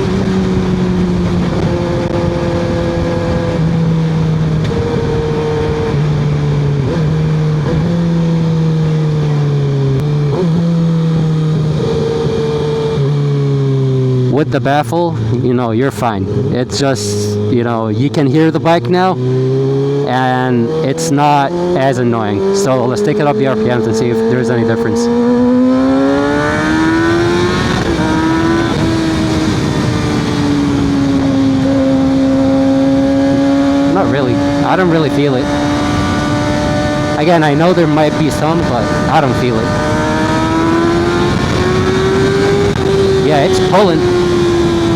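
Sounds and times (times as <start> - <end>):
wind noise rushing: 0.0 - 8.2, 25.1 - 44.9
motorcycle engine while riding: 0.0 - 44.9.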